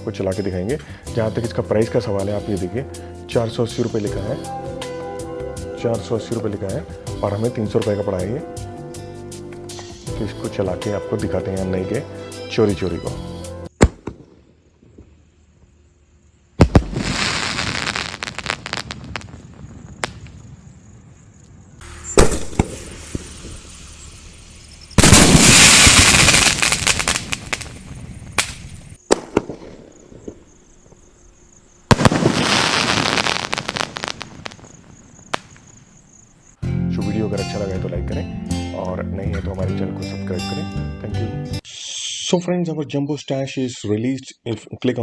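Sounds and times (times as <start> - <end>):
firework bangs: 13.7 - 14.5, 16.6 - 31.0, 31.9 - 36.2
firework crackling and hissing: 16.6 - 30.5, 31.9 - 36.2.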